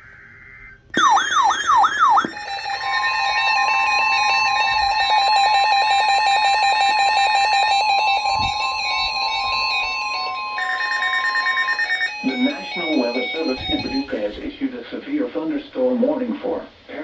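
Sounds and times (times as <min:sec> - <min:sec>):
falling electronic sweeps: 0:00.0 - 0:14.3
fast-pulsing lower tone: 0:00.0 - 0:14.3
stepping higher tones: 0:00.0 - 0:14.5
steady high alert tone: 0:01.0 - 0:14.4.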